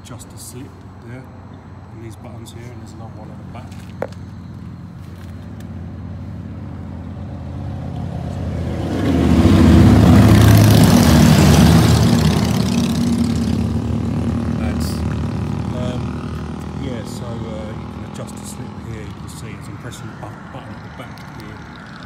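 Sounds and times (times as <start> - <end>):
vehicle passing: 0.0 - 22.0
steady low hum: 11.4 - 22.0.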